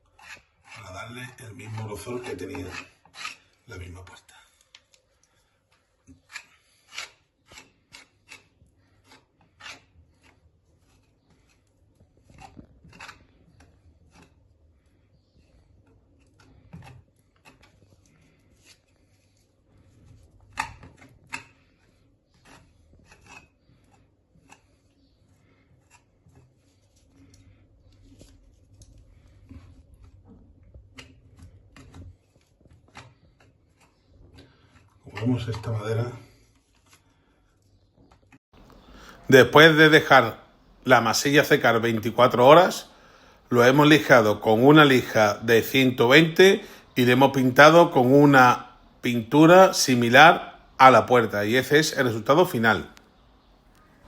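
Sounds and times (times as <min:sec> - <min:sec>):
putty knife scraping: 0:00.0 - 0:03.9, 0:04.5 - 0:38.8.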